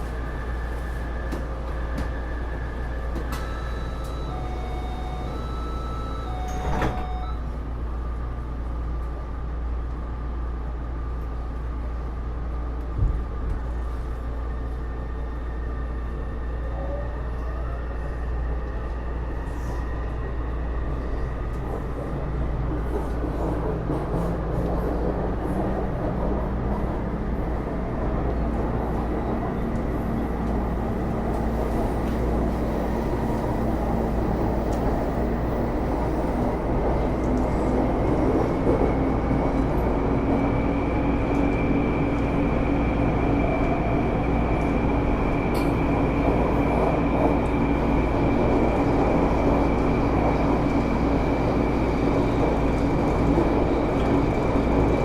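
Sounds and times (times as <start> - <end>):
metro motor whine: 0.1 - 8.3.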